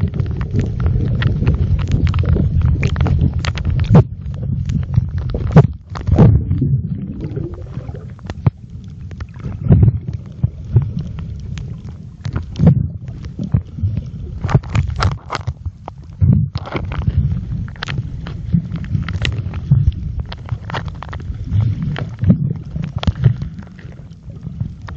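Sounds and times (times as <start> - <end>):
underwater churning rumble: 0.0 - 24.9
water gurgle: 0.0 - 24.9.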